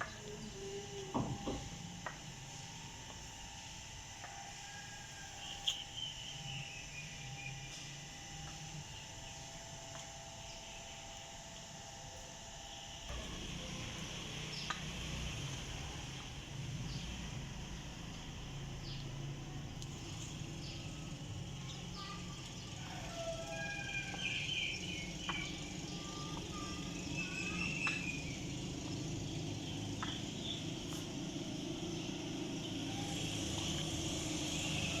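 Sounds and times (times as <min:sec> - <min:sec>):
birds chirping: 0:20.4 - 0:33.4.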